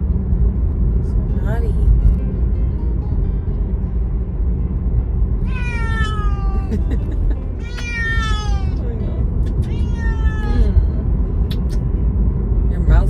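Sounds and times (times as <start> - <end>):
steady low rumble: 0.0 - 13.0
cat meowing: 5.4 - 8.9, 9.5 - 10.9.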